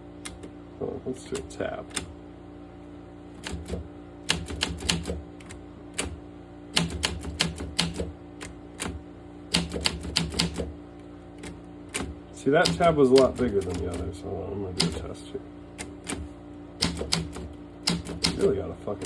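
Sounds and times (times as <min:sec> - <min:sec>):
typewriter key strikes: 0:06.8 - 0:08.1, 0:09.5 - 0:10.7, 0:11.9 - 0:13.9, 0:14.8 - 0:15.0, 0:16.8 - 0:18.5.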